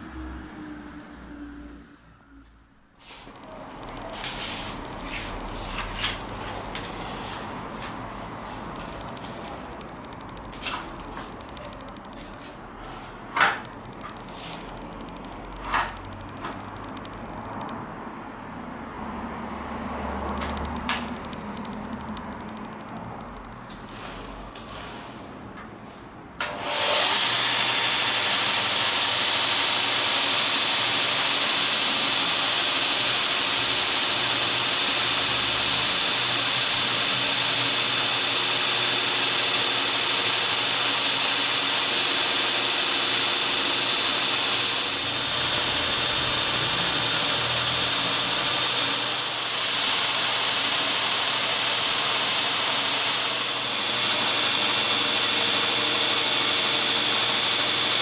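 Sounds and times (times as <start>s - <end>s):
belt grinder running: 26.5s - 58.0s.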